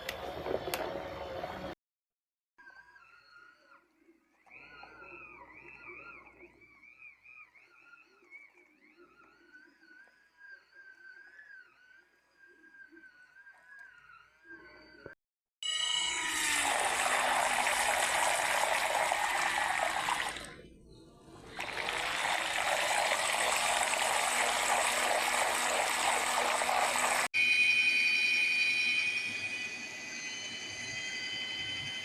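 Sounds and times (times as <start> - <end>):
high-pitched whine: 9.0 - 32.0
washing machine churning water: 16.3 - 20.6, 21.4 - 27.3.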